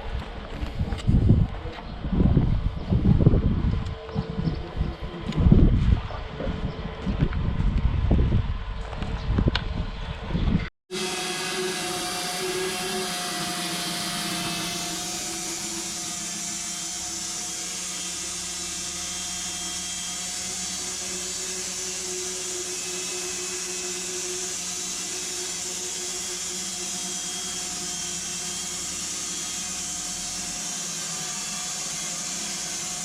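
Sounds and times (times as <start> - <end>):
machine humming: 10.9 - 33.0.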